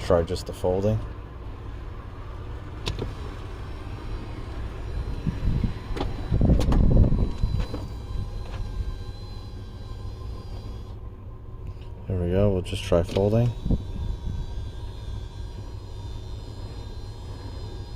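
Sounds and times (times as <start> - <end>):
heavy low rumble: 0.0 - 16.0
car engine running: 0.0 - 17.9
power seats moving: 2.4 - 11.0, 11.6 - 15.4
faint high steady tone: 3.2 - 17.9.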